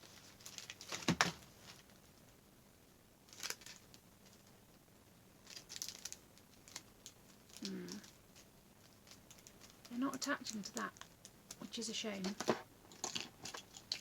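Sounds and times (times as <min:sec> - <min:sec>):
small items clicking and tapping: 0:05.4 - 0:14.0.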